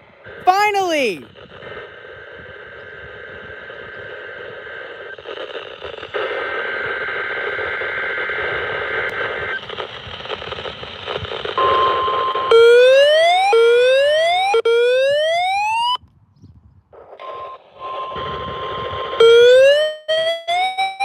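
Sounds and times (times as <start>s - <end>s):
radio static hiss: 0.2s - 11.6s
steady warning alarm tone: 11.6s - 16.0s, 17.2s - 21.0s
rising siren-like alarm sweep: 12.5s - 16.0s, 17.2s - 21.0s.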